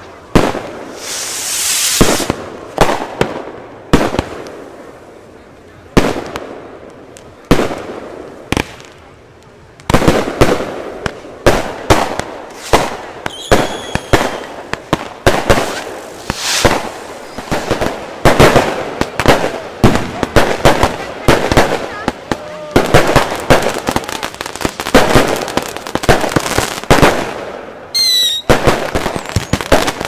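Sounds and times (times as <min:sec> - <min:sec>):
fireworks bangs: 0:00.0 - 0:05.0, 0:05.8 - 0:30.0
firework whistle: 0:00.9 - 0:02.3, 0:12.6 - 0:14.6, 0:27.9 - 0:28.5.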